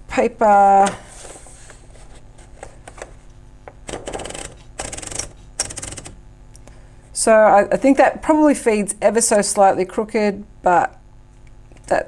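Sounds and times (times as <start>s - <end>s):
typewriter platen ratcheting clicks: 3.7s - 6.2s.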